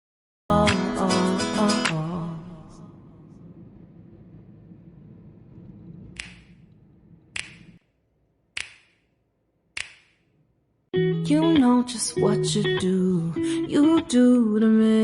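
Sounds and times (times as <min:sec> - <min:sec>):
low steady hum: 0:01.0 - 0:08.6
finger snaps with echo: 0:07.4 - 0:07.8, 0:08.6 - 0:09.1, 0:09.8 - 0:10.3.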